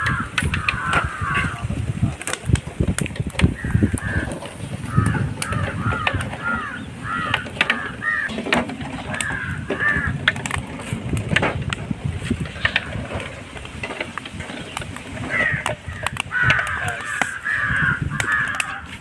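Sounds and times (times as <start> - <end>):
crows cawing: 0.0 - 1.7, 3.5 - 8.4, 9.0 - 10.4, 15.2 - 19.0
clicks and knocks: 2.2 - 17.4.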